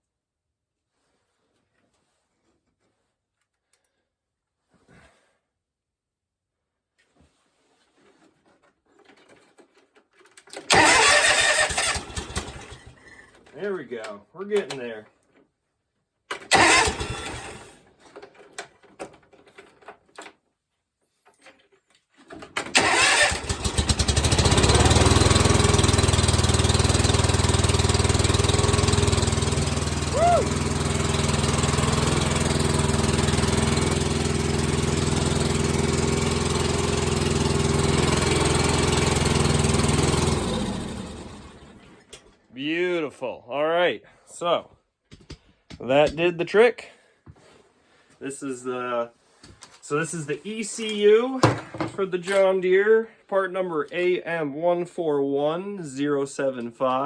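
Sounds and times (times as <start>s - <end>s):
starter motor cranking: 10.4s - 13.2s, 16.3s - 18.0s, 22.3s - 42.1s
mower engine running: 10.7s - 13.0s, 16.5s - 17.8s, 22.6s - 42.0s.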